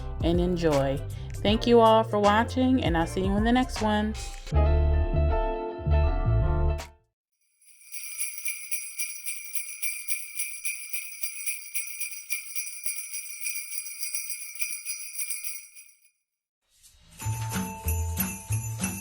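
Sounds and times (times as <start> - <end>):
jingle bells shaken: 7.6 - 16.1, 17.2 - 19.0.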